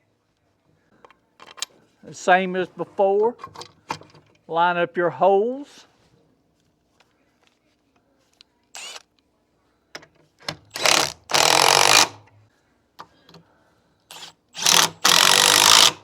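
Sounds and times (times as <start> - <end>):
power driver running: 10.7 - 12.2, 14.1 - 16.0.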